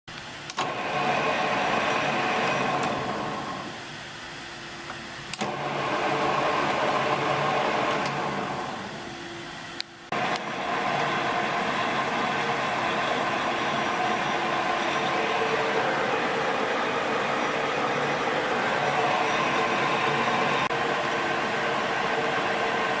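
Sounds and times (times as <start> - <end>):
lathe click: 0.2 - 3.4, 5.3 - 8.5, 9.8 - 16.4
lathe motor droning: 0.6 - 4.4, 5.3 - 23.0.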